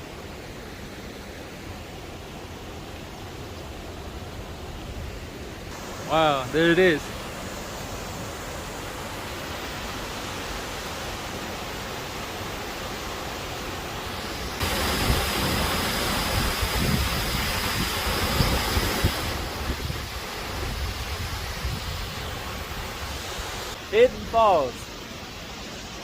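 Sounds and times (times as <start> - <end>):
waterfall rushing: 0.0 - 26.0
wind buffeting microphone: 14.6 - 23.4.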